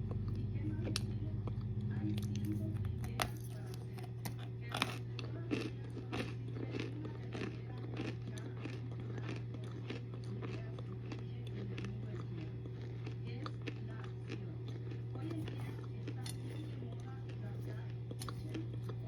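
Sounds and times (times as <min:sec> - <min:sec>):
person crunching hard food: 0:00.0 - 0:19.0
steady low hum: 0:00.0 - 0:19.0.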